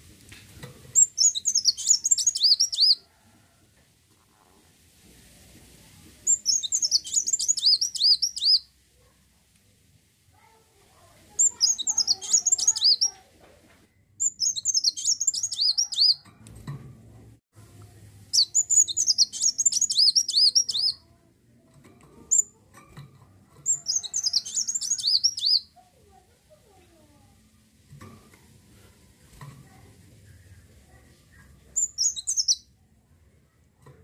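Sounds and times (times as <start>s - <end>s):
bird twittering: 1.0s - 3.0s, 6.2s - 8.7s, 11.4s - 13.2s, 14.2s - 16.2s, 18.3s - 21.0s, 23.6s - 25.7s, 31.8s - 32.6s.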